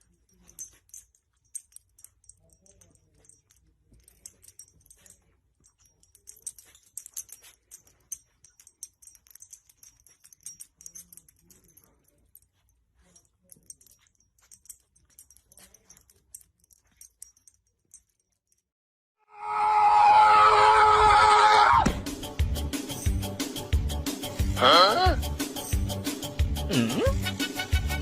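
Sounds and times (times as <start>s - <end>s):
light jingling: 0.0s - 18.7s, 22.3s - 24.6s, 25.2s - 26.6s.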